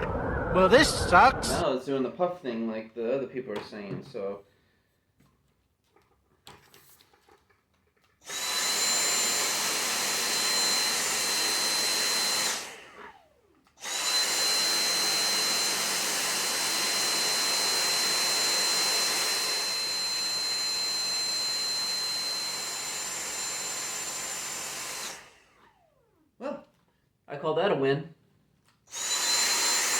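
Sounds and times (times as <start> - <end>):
stick vacuum motor whine: 0.0 - 1.6, 8.3 - 26.2, 28.9 - 29.9.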